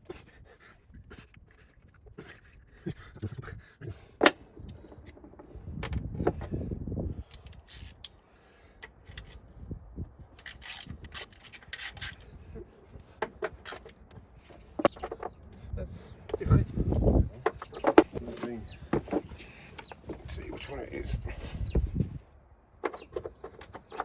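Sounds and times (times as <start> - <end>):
rubbing and scraping car parts: 7.3 - 8.2, 10.2 - 15.4.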